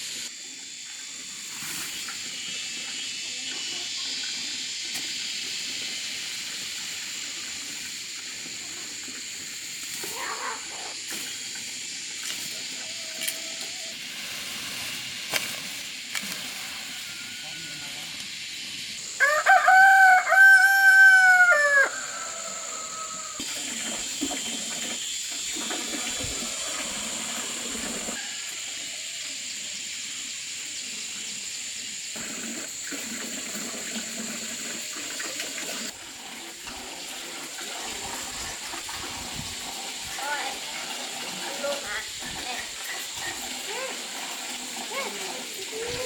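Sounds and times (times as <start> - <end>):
rooster crowing: 16.8 - 18.1, 19.0 - 23.5, 26.4 - 29.2.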